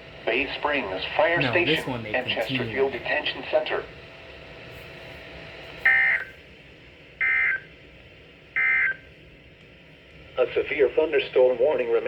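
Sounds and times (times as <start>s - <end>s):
radio hiss: 0.0s - 6.0s.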